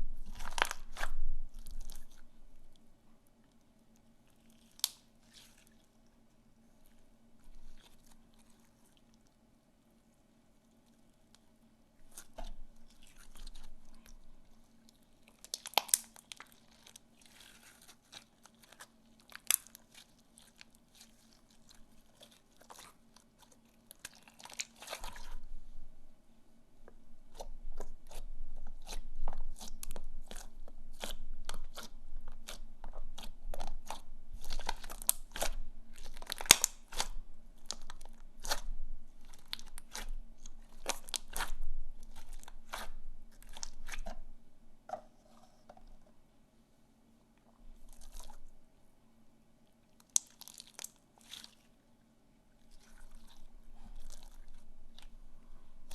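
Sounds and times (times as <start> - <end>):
slime clicking and crackling: 0.3 - 2.2, 4.3 - 5.6, 14.9 - 25.4, 27.3 - 44.2, 50.0 - 51.6.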